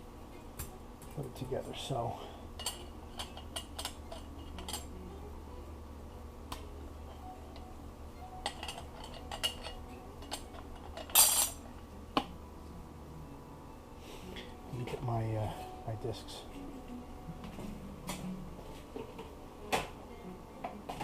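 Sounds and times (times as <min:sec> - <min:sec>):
metal parts clinking: 0:08.4 - 0:11.6
metal parts clattering: 0:08.5 - 0:11.6.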